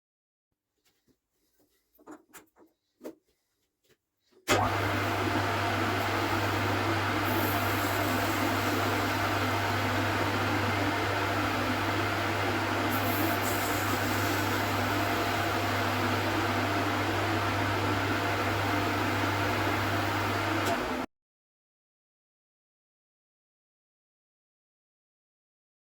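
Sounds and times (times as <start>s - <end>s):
metal lathe running: 4.6s - 21.0s.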